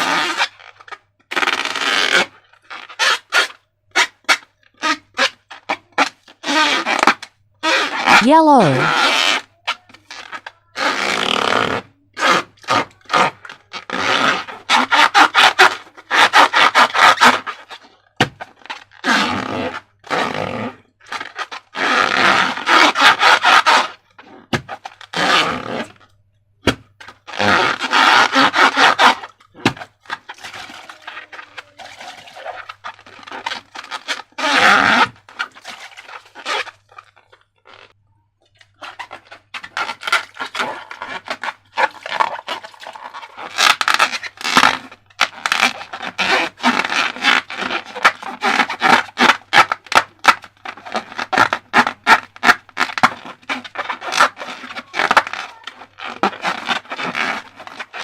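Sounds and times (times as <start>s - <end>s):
slime squelching and crackling: 28.5s - 34.2s, 35.3s - 58.0s.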